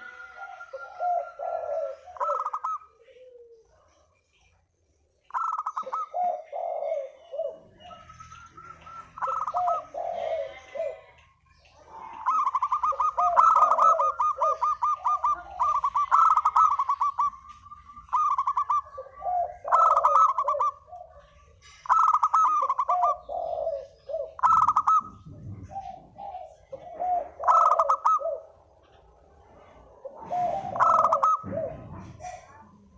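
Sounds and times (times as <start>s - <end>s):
doves calling and cooing: 0.0s - 32.9s.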